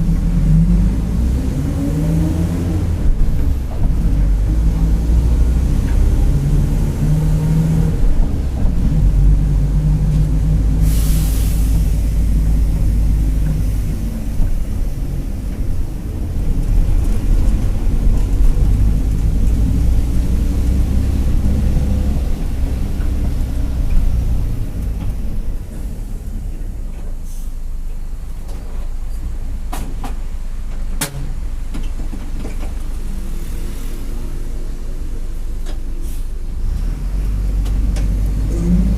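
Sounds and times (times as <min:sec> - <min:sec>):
diesel bus engine rumbling: 0:00.0 - 0:38.9
air brakes hiss: 0:10.8 - 0:12.5, 0:27.2 - 0:27.6, 0:35.4 - 0:36.4.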